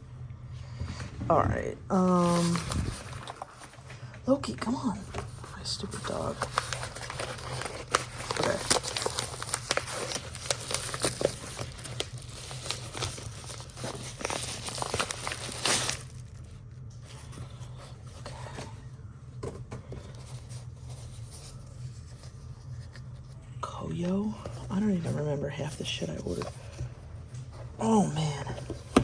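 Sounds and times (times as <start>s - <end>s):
packaging crinkling and tearing: 2.0s - 3.9s, 5.1s - 18.3s.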